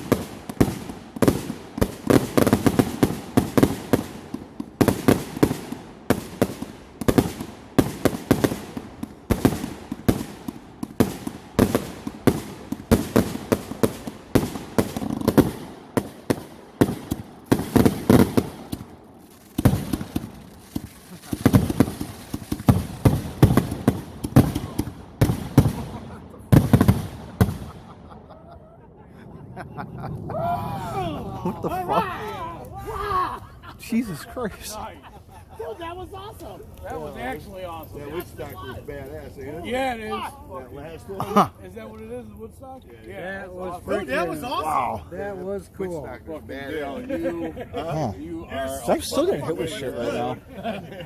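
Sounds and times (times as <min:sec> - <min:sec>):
firework barrage bangs and crackles: 0:00.0 - 0:28.2.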